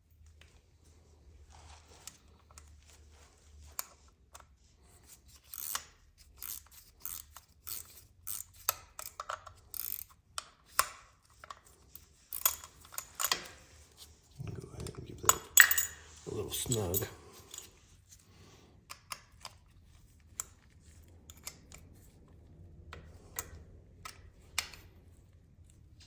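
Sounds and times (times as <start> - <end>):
ratcheting wrench clicking: 5.3 - 10.2.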